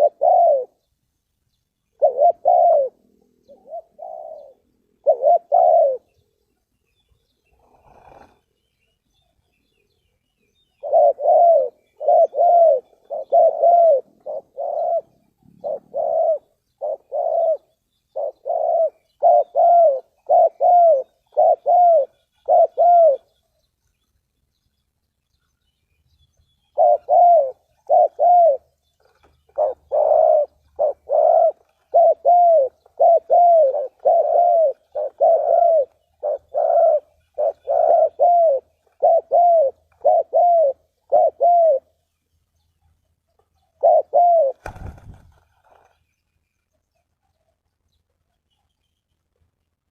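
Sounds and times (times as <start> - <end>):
dove cooing: 0.0 - 0.9, 1.9 - 6.2, 7.5 - 9.0, 10.6 - 23.5, 26.6 - 42.0, 43.6 - 45.9.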